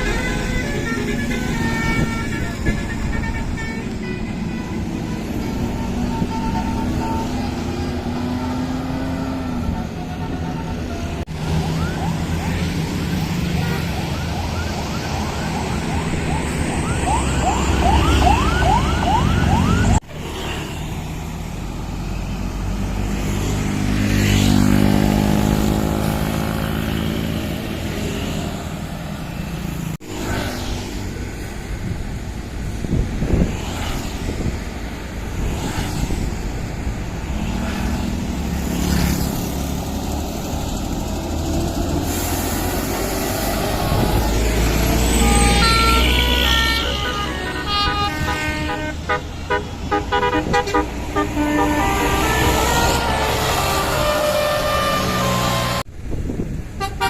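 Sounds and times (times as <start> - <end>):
bus horns playing tunes: 0.0 - 11.3, 42.1 - 55.9, 56.8 - 57.0
diesel engines rumbling: 0.0 - 57.0.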